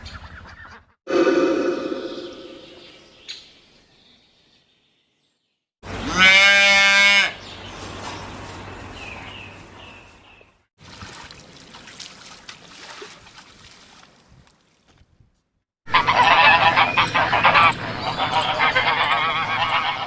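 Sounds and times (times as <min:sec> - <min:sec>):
faint high chirps: 0:01.1 - 0:03.5
farm animal bleating: 0:06.0 - 0:07.4.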